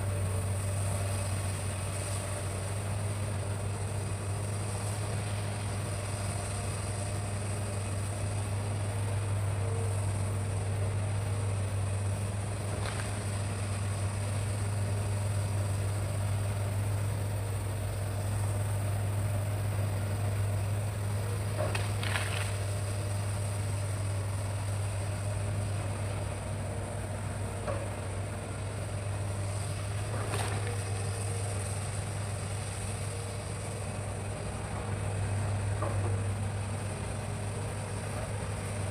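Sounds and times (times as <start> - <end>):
diesel engine droning: 0.0 - 38.9.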